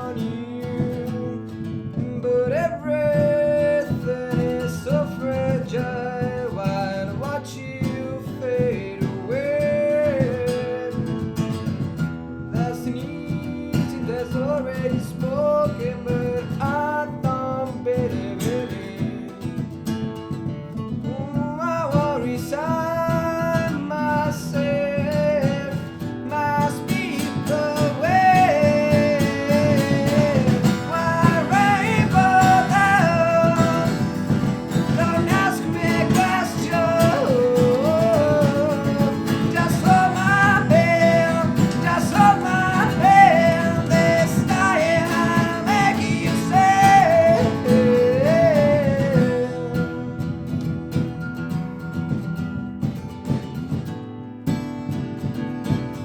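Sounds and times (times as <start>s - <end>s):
hand percussion: 0.0s - 53.9s
strummed acoustic guitars: 0.0s - 56.0s
sliding melody line: 26.8s - 50.4s.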